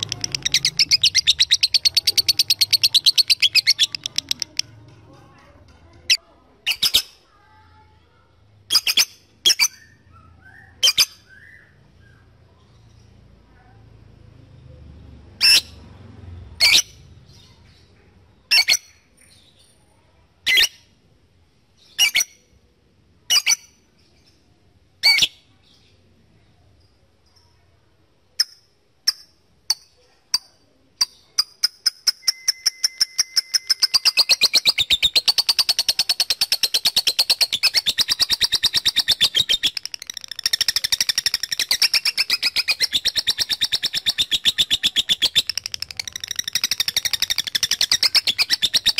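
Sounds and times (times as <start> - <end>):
lovebird sharp calls: 0.0 - 4.6, 31.4 - 48.9
lovebird chattering trill: 0.0 - 4.7, 6.1 - 7.2, 8.7 - 11.7, 28.4 - 48.9.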